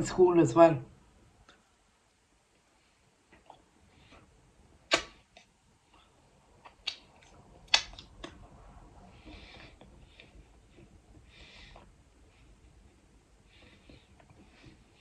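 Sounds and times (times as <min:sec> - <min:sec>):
mouth clicks and smacks: 0:04.8 - 0:05.5, 0:06.6 - 0:08.5.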